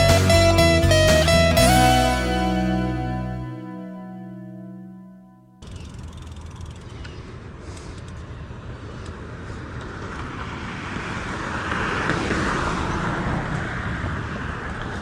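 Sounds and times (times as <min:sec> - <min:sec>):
steady low traffic rumble: 0:00.0 - 0:11.6
car passing by: 0:08.6 - 0:15.0.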